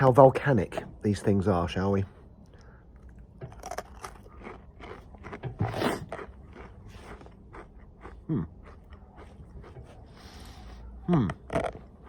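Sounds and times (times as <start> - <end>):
crunching tortilla chip: 3.5 - 9.8.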